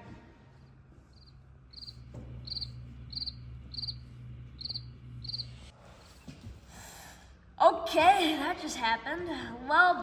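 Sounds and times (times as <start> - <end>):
low steady hum: 0.0 - 10.0
cricket chirping: 1.2 - 5.6.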